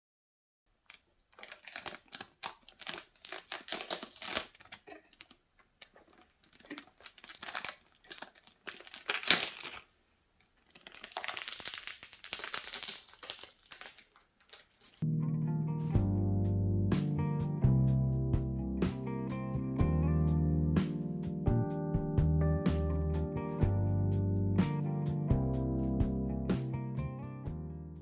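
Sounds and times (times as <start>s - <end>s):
plastic packaging crinkling: 0.7s - 15.0s.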